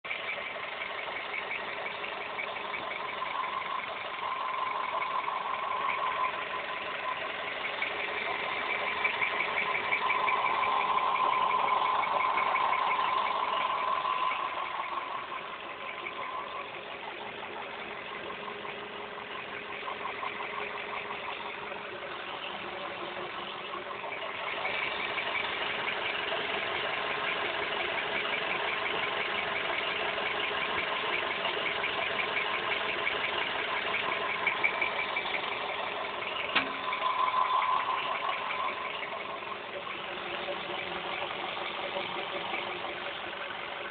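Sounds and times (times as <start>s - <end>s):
petrol engine running: 0.0s - 43.9s
rapid rhythmic engine knock: 0.0s - 43.9s.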